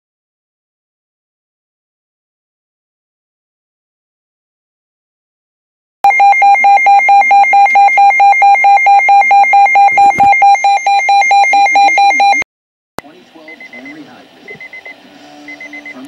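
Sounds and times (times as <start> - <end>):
rapid electronic beeps: 6.0 - 12.4, 13.5 - 16.0.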